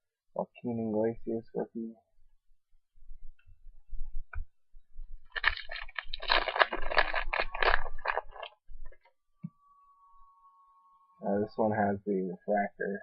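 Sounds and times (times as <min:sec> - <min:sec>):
foil wrapper crinkling and tearing: 0:05.3 - 0:08.6.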